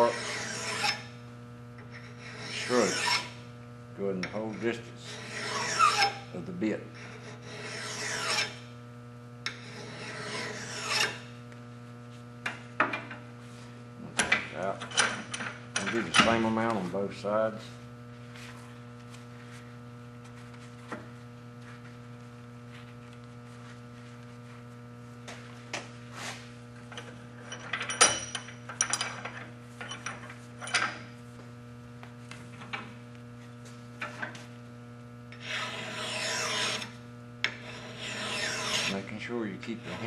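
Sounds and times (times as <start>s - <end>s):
file rasping across axe steel: 0.0s - 1.1s, 2.0s - 3.4s, 4.4s - 6.3s, 7.0s - 8.7s, 9.5s - 11.3s, 35.4s - 40.0s
steady low hum: 0.0s - 40.0s.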